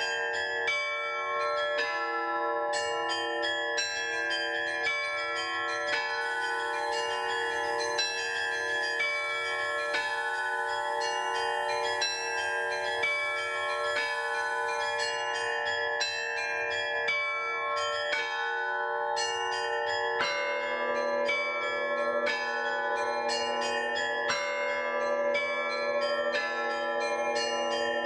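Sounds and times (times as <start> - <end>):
smaller bells: 0.0 - 28.0
church bells ringing: 4.5 - 17.5.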